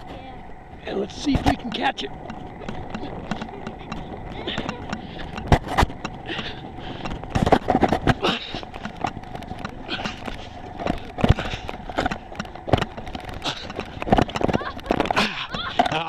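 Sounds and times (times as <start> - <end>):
footsteps running on rough ground: 0.8 - 16.0.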